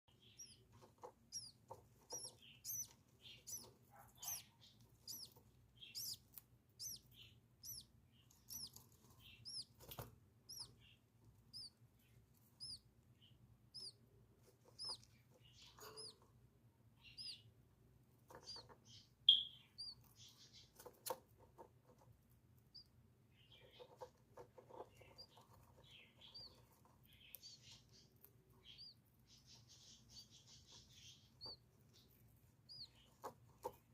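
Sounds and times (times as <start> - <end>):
small birds chirping: 0.0 - 33.9
bird squeak: 1.3 - 4.5, 14.8 - 16.2, 18.4 - 20.6.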